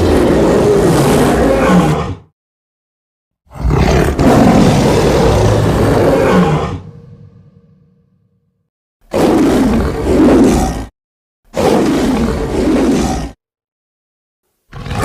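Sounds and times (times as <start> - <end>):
deep gritty monster roar: 0.0 - 2.3, 3.5 - 8.1, 9.1 - 10.9, 11.6 - 13.4, 14.7 - 15.0.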